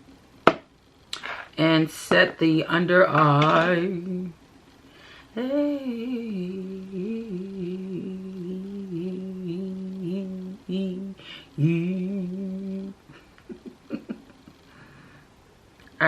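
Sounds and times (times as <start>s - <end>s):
person humming: 3.2s - 4.4s, 5.3s - 14.2s.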